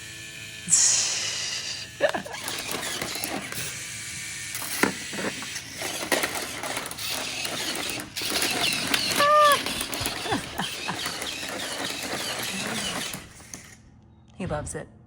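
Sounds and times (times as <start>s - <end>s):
toy motor and gearbox rattling: 1.9s - 13.8s.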